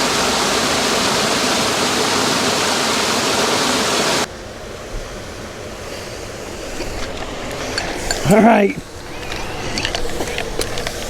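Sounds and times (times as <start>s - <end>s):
waterfall rushing water: 0.0s - 4.3s.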